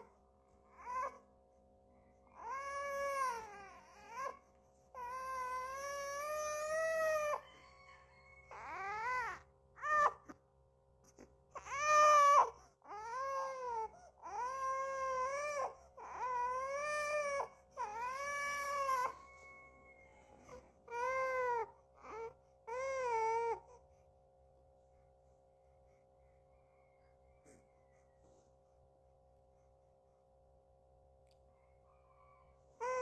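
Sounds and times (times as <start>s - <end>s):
baby-like crying wails: 0.7s - 1.2s, 2.3s - 10.4s, 11.6s - 23.8s, 32.8s - 33.0s.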